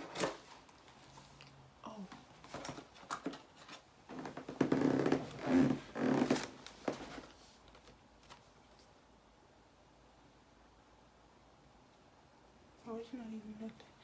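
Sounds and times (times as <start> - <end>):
packaging rustling and crinkling: 2.4 - 8.6.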